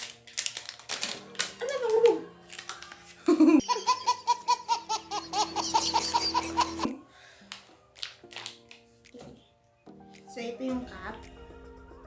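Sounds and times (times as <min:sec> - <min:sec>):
high-pitched laughter: 0:03.3 - 0:07.0.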